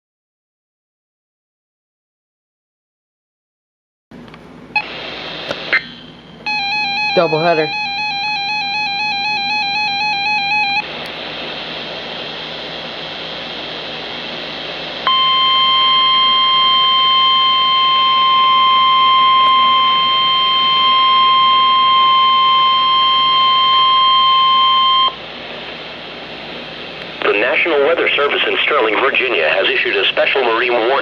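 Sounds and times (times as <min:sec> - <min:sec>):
radio hiss: 0:04.8 - 0:06.2, 0:07.1 - 0:07.8, 0:10.0 - 0:24.0, 0:25.1 - 0:31.0
steady high alert tone: 0:05.8 - 0:10.9.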